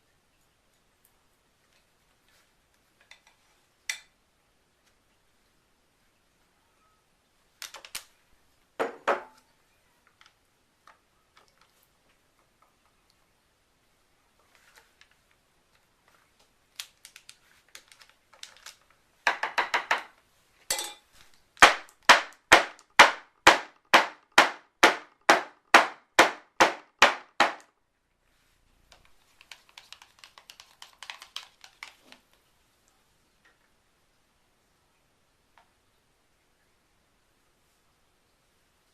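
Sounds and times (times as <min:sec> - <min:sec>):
soap mold knocking on a surface: 0:08.8 - 0:09.4, 0:19.3 - 0:20.2.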